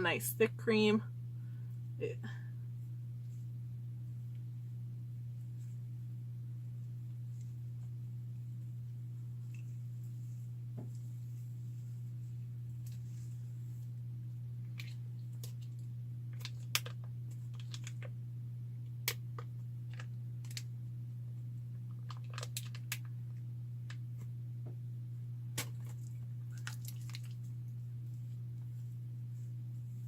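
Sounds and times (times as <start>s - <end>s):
low hum: 0.0s - 30.0s
hands working hair mask: 2.7s - 18.2s, 25.6s - 30.0s.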